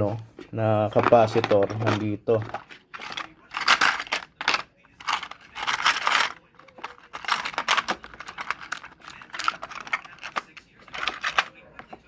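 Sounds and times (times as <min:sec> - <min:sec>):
small hard parts scraping and clinking: 0:00.8 - 0:12.0.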